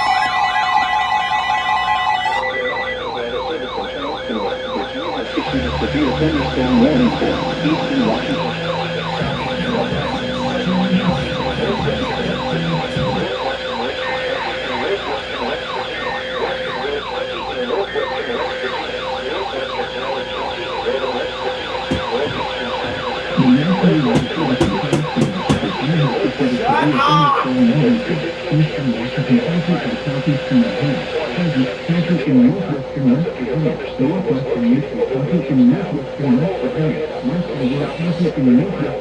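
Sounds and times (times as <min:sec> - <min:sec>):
warbling siren: 0:00.0 - 0:32.3
steady low hum: 0:04.0 - 0:18.4.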